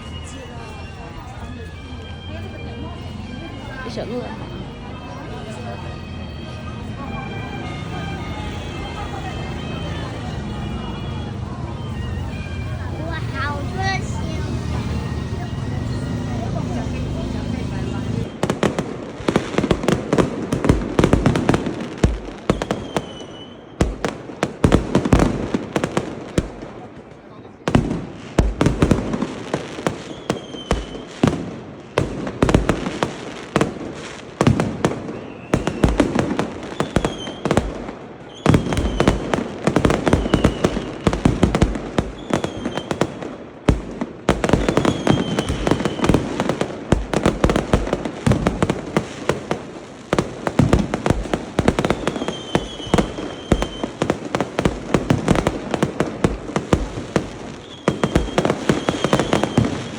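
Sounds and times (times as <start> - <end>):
fireworks banging and crackling: 0.1 - 5.8, 6.4 - 59.9
high firework whistles: 12.2 - 17.3, 18.0 - 26.8, 27.7 - 59.9.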